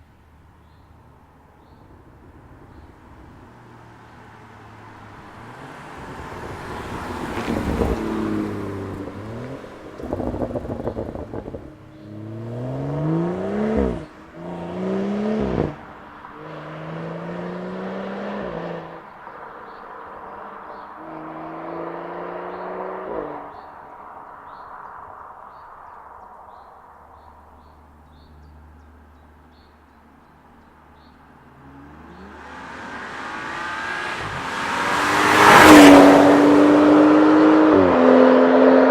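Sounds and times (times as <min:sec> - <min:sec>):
car engine revving: 0:04.1 - 0:19.1, 0:20.7 - 0:23.6, 0:31.5 - 0:38.9
exhaust crackles: 0:05.0 - 0:16.0.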